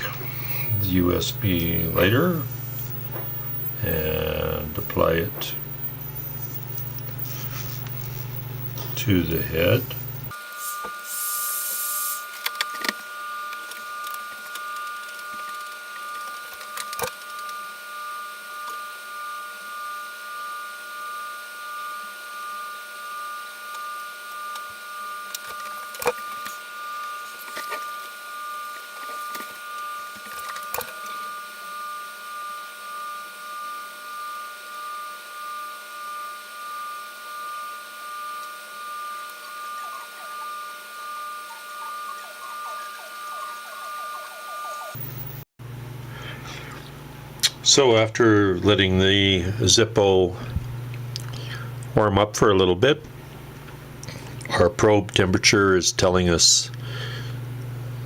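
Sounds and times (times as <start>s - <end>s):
arc lighter crackling hiss: 0.0s - 15.7s
high-pitched whine: 0.0s - 18.4s, 36.8s - 45.5s.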